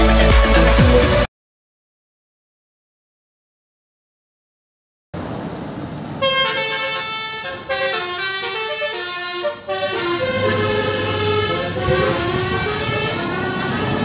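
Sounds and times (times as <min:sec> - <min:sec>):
musical air horn tune: 0:06.2 - 0:14.0
steady rumble: 0:09.4 - 0:14.0.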